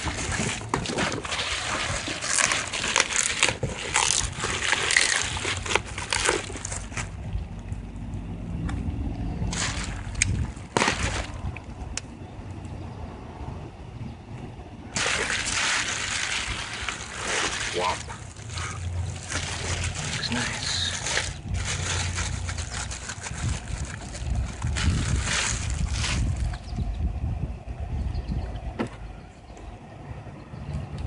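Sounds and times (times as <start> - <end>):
packaging rustling and crinkling: 0.0 - 7.2, 9.5 - 11.3, 15.0 - 26.7
low hum: 0.0 - 31.0.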